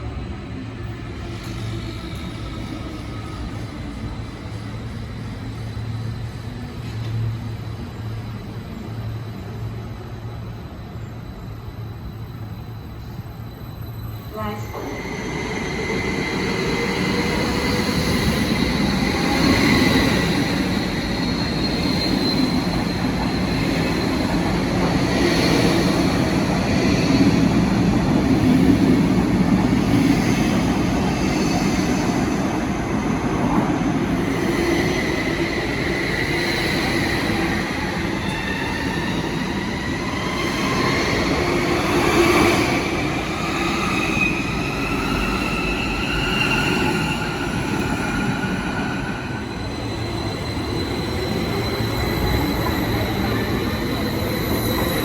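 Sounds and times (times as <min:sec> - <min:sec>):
train rumbling on tracks: 0:00.0 - 0:55.0
high wheel squeal: 0:12.2 - 0:27.6, 0:34.0 - 0:55.0.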